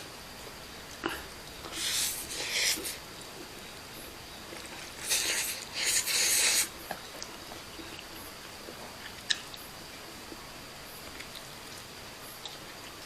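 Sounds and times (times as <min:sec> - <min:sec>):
quiet chewing: 0:04.5 - 0:09.7, 0:11.0 - 0:13.0
noodles slurped: 0:04.6 - 0:06.8.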